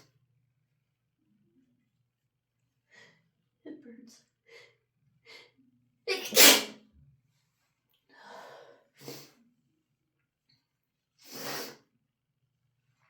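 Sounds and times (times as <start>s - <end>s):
sniffling through the nose: 9.0s - 9.4s, 11.2s - 11.9s.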